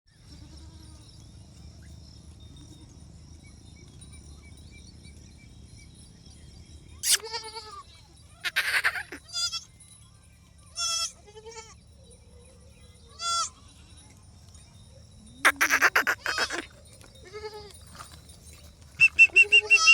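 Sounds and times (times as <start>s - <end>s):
goats bleating: 8.4s - 9.6s, 15.5s - 16.7s, 19.2s - 19.9s.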